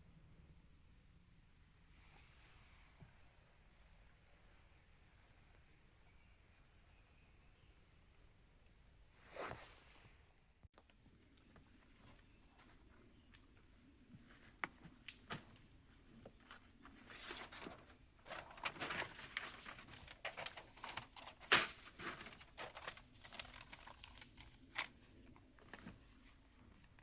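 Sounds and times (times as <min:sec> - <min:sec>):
rustling and crinkling: 0:10.8 - 0:27.0.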